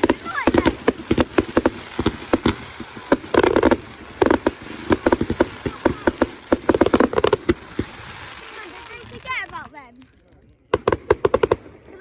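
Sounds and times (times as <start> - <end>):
fireworks bangs and crackles: 0.0 - 12.0.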